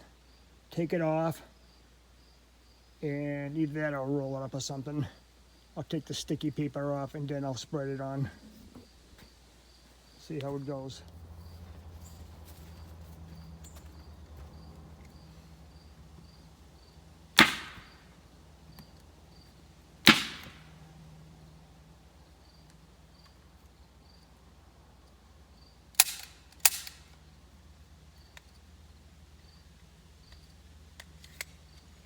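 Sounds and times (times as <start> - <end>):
staple gun firing: 17.4 - 18.0, 20.0 - 20.6, 26.0 - 27.0.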